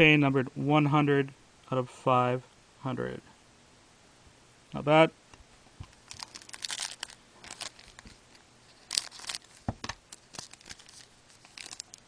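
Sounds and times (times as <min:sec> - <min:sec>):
foil wrapper rustling and crinkling: 0:05.8 - 0:12.0.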